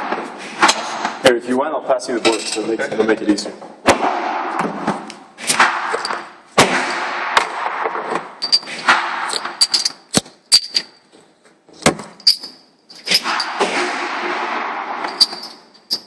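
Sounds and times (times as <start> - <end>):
gunshots echoing: 0.0 - 1.2, 3.8 - 9.6, 13.2 - 15.7.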